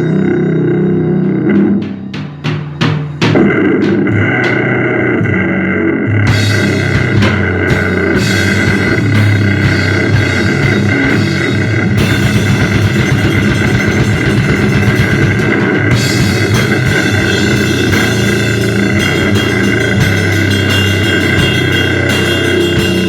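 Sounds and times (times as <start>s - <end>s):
distorted drone: 0.0s - 23.0s
fast blast beat drums: 1.5s - 4.8s, 6.3s - 23.0s
cymbal wash: 8.2s - 23.0s.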